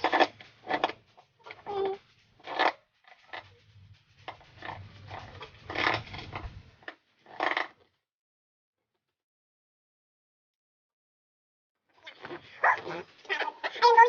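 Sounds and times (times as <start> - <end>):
low hum: 0.0 - 7.2
dog calls: 12.1 - 14.0.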